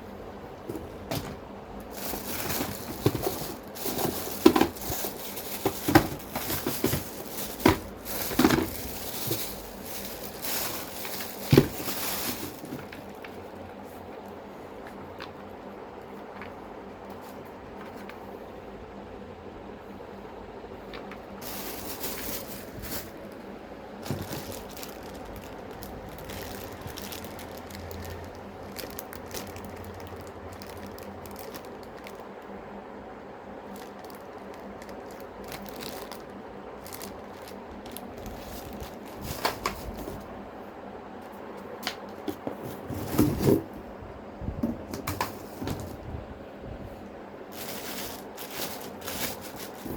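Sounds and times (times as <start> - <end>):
steady low hum: 0.0 - 49.9
plastic crinkling: 0.6 - 13.6, 20.9 - 32.6, 33.4 - 40.3, 47.5 - 49.9.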